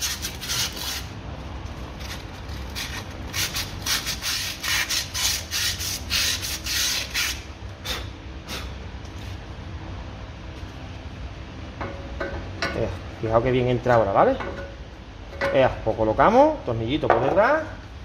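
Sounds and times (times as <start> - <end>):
sandpaper scrubbing rusty metal: 0.0 - 1.2, 2.6 - 7.5.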